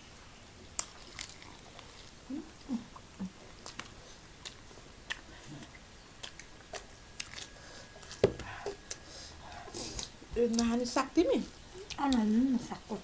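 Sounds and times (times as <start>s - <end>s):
chewing and crunching food: 0.5s - 13.0s
wet mouth clicks: 0.8s - 9.0s.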